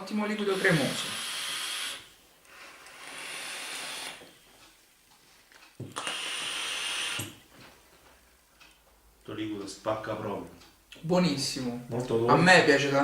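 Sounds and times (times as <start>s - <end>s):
breathy vaping hisses: 0.3s - 4.4s, 5.8s - 7.4s
faint steady whistle: 6.0s - 7.3s.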